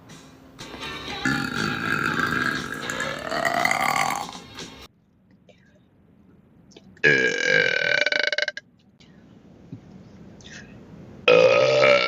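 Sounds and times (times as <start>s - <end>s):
person belching loudly: 1.2s - 4.4s, 7.0s - 8.6s, 11.3s - 12.0s.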